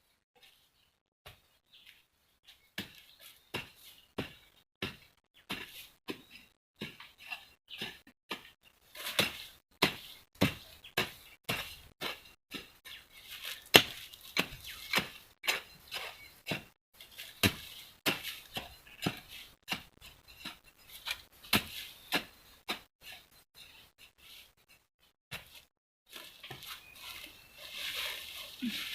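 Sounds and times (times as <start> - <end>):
digging tool chopping into ground: 13.6 - 16.6.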